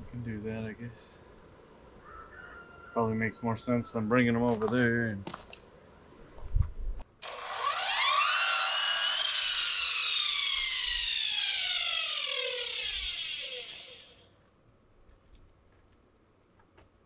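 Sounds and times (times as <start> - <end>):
power saw cutting wood: 7.2 - 14.2.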